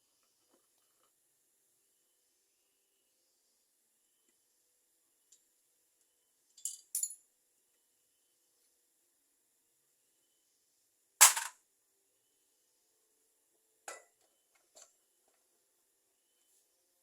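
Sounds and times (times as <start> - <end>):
hard parts clacking: 11.2 - 11.5.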